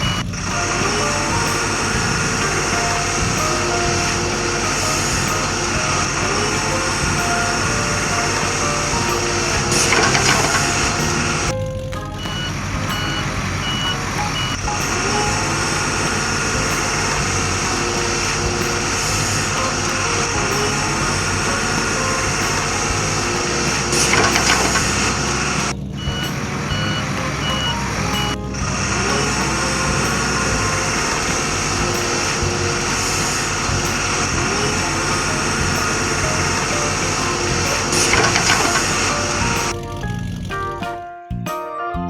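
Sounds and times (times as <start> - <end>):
reversing beeps: 0.0 - 21.1, 22.0 - 32.8
truck engine running: 0.0 - 41.0.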